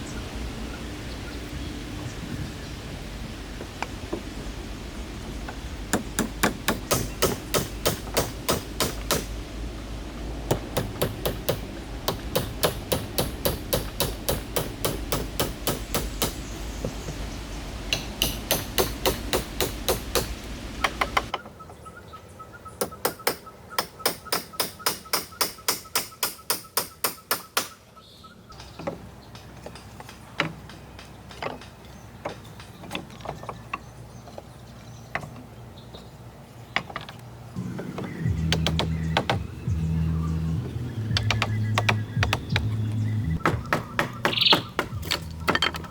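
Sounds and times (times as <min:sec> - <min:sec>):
hammer blows: 0:17.9 - 0:21.3.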